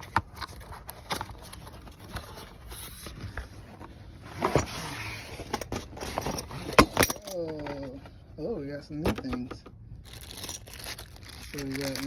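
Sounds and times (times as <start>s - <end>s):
packaging rustling: 10.0s - 12.0s.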